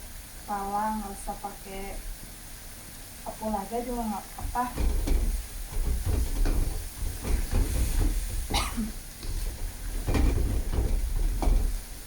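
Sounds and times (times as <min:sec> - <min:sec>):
spatula knocking and scraping: 0:04.4 - 0:12.0.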